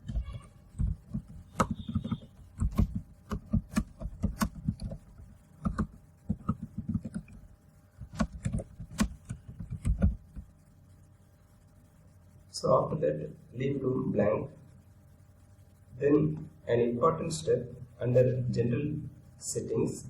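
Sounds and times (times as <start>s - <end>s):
computer keyboard typing: 0.0s - 10.5s.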